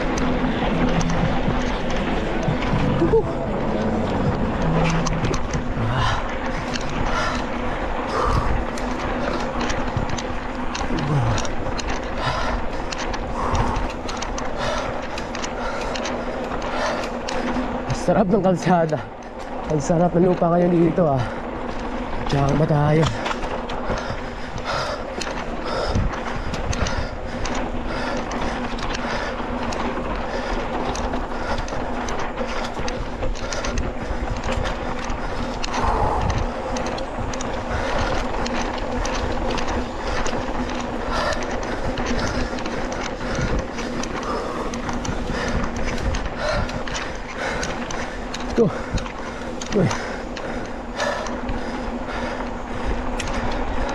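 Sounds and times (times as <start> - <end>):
bike clicks and rattles: 0.0 - 53.9
rush of tyres and air: 0.0 - 53.9.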